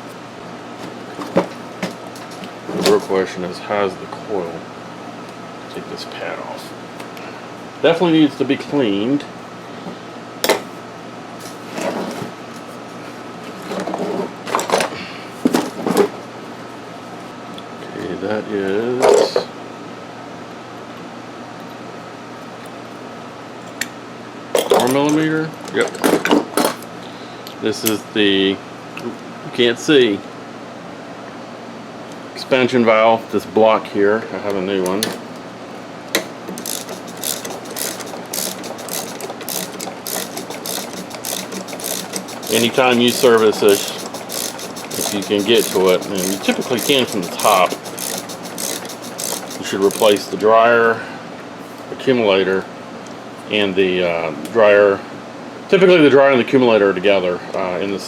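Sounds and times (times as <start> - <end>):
socket ratchet clicking: 36.5 - 50.3.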